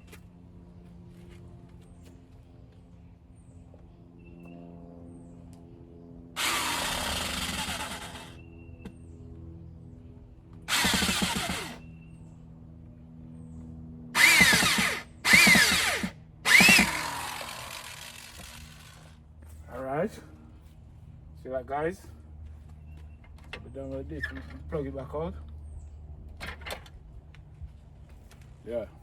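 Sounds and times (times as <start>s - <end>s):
electric drill whining: 6.4s - 8.4s, 10.7s - 11.8s, 14.2s - 19.1s.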